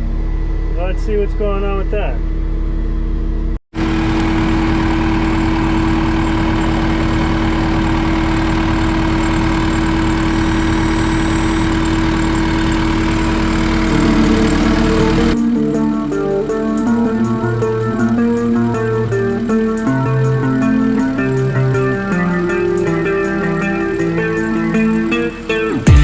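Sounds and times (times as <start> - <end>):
constant droning tone: 0.0 - 26.0
diesel engine idling: 0.0 - 26.0
music: 13.9 - 26.0.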